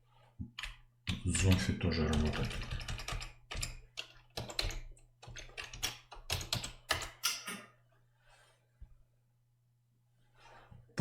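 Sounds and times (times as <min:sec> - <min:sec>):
typing on computer keyboard: 0:00.6 - 0:07.2.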